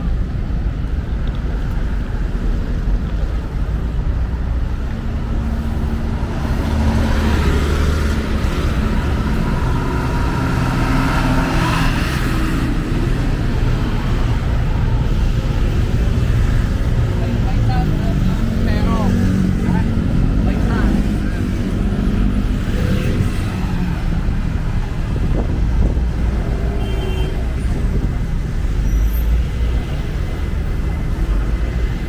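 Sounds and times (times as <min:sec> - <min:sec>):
vehicle engines running: 0:00.0 - 0:32.0
vehicle passing: 0:04.6 - 0:26.8.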